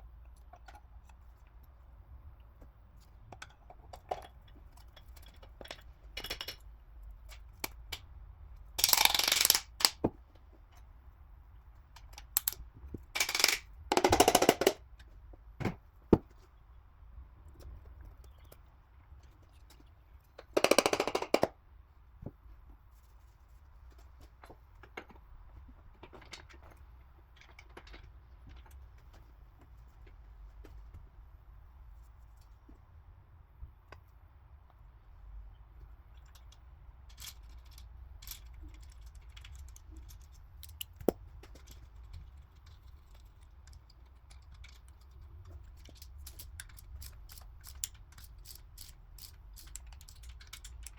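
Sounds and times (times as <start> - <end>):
metal parts clicking and clinking: 3.4 - 8.0, 8.8 - 10.1, 11.9 - 12.6, 13.2 - 15.1, 36.1 - 50.9
metal parts clattering: 8.8 - 10.0, 13.2 - 14.8.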